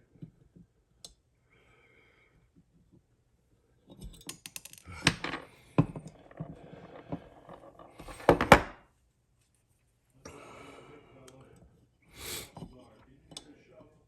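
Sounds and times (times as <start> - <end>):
small metal parts clicking: 4.0 - 5.0.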